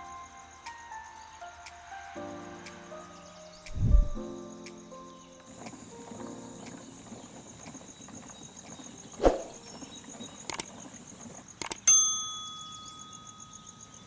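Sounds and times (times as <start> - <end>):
insects trilling: 0.0 - 14.0
light clicks: 10.3 - 11.9
sharp metallic ding: 11.6 - 14.0.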